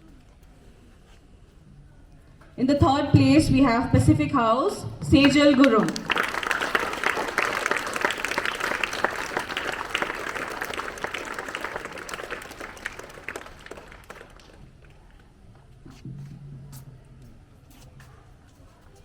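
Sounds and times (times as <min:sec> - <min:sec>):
audience applauding: 0:05.2 - 0:15.0.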